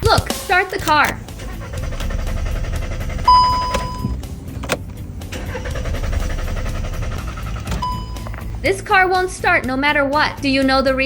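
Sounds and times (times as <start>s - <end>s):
car starter cranking engine: 0.0s - 9.3s
electronic beep: 3.3s - 4.1s.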